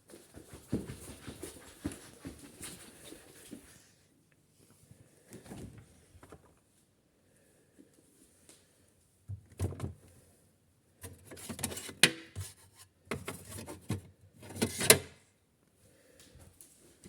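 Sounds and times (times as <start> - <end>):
rustling and knocking of handled objects: 0.0 - 3.9.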